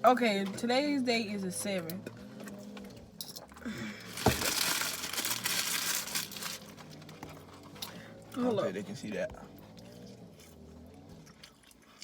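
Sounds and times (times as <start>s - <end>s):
crinkling and rustling: 4.0s - 7.9s.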